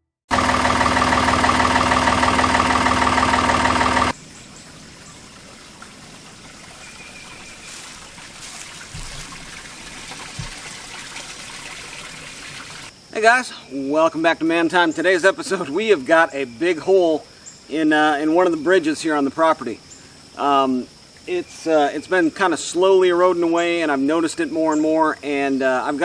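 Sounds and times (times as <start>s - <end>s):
backhoe engine running: 0.3s - 4.2s
water trickling: 4.1s - 12.9s.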